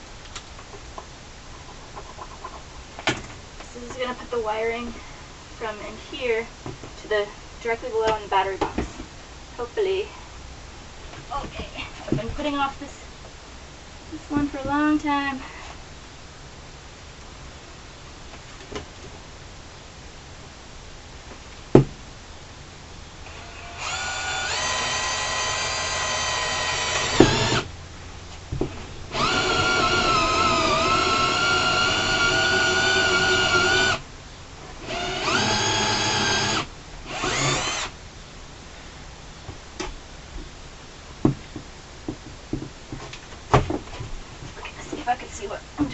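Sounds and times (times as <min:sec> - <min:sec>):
power drill whining: 0:23.3 - 0:27.7, 0:29.1 - 0:34.0, 0:34.8 - 0:37.9.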